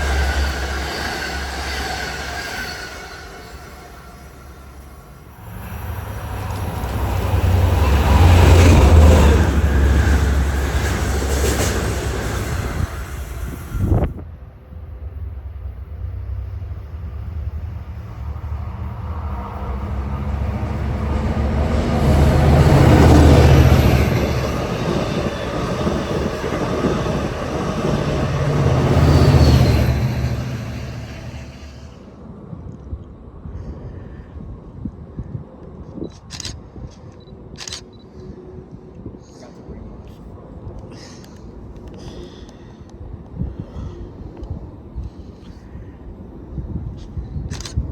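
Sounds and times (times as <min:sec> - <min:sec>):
rushing rail noise: 0:00.0 - 0:47.9
train passing by rumbling: 0:00.0 - 0:47.9.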